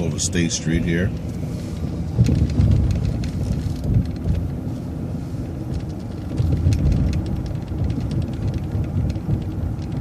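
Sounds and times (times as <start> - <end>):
vehicle engine and road rumble: 0.0 - 10.0
light rattling clicks: 5.6 - 10.0.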